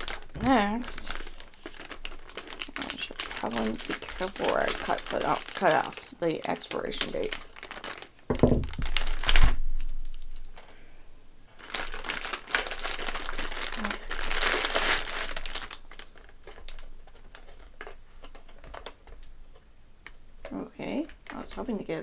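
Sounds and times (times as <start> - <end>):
plastic packaging crinkling: 0.0 - 10.7, 11.5 - 22.0
knocks: 8.3 - 9.0.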